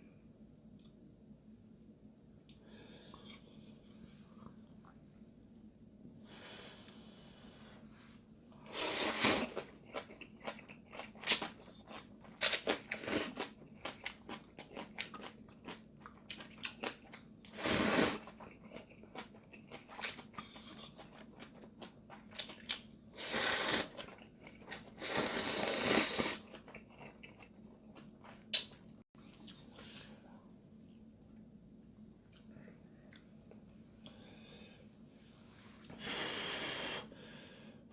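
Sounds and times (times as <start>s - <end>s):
noodle slurping: 8.7s - 9.7s, 17.5s - 18.4s, 23.2s - 24.1s, 24.7s - 26.5s.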